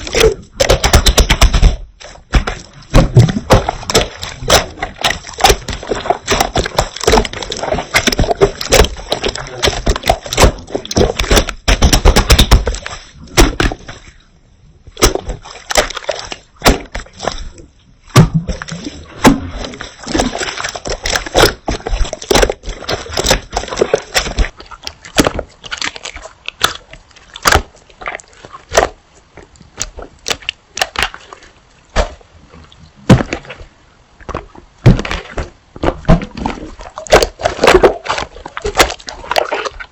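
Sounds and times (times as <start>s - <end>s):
slime squelching and crackling: 0.0s - 39.9s.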